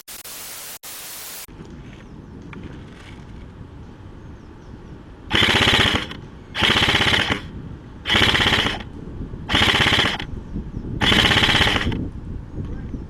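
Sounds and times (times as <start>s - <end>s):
airsoft rifle full-auto bursts: 5.3s - 7.5s, 8.1s - 8.9s, 9.5s - 10.3s, 11.0s - 12.0s.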